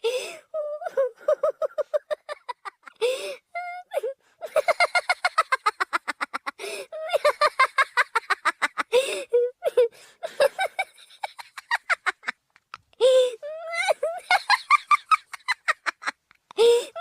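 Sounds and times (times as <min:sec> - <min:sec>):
gasping in-breaths: 0:00.0 - 0:00.6, 0:03.0 - 0:04.4, 0:06.6 - 0:07.0, 0:12.9 - 0:13.5, 0:16.5 - 0:17.0
high-pitched cackling laugh: 0:04.4 - 0:09.0, 0:10.3 - 0:12.9, 0:13.7 - 0:16.6.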